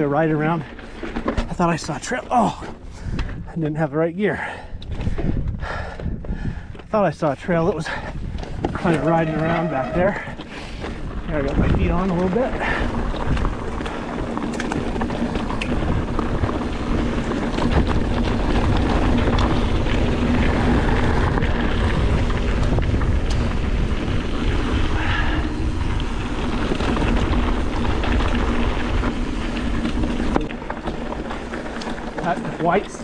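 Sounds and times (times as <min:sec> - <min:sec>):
bike rolling over rocky trail: 0:00.0 - 0:33.0
wind on microphone: 0:02.8 - 0:03.6, 0:04.7 - 0:06.8, 0:07.9 - 0:30.5
small clicks and rattles: 0:08.3 - 0:23.7, 0:25.9 - 0:33.0.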